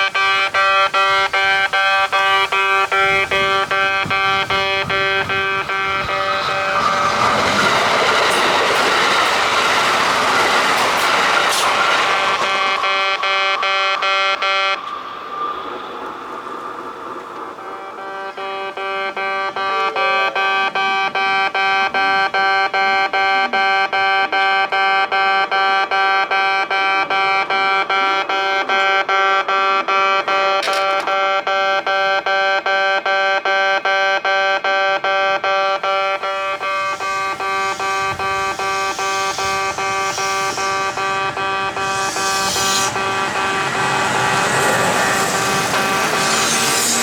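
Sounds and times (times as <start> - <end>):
approaching train rushing: 0.0 - 22.3, 35.8 - 47.0
level crossing alarm beeping: 0.0 - 47.0.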